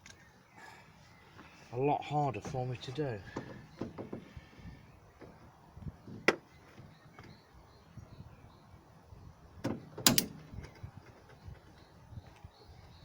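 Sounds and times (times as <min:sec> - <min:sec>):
tools clicking and knocking: 0:10.0 - 0:10.5.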